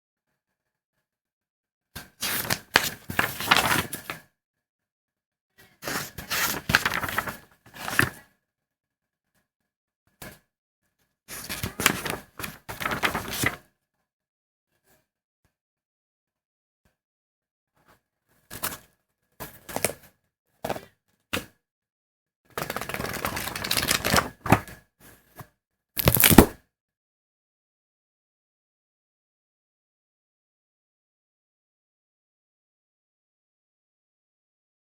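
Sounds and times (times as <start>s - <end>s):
paper pages flipping: 2.2s - 4.0s, 6.3s - 8.1s, 11.5s - 13.6s, 22.6s - 24.6s, 26.0s - 26.6s.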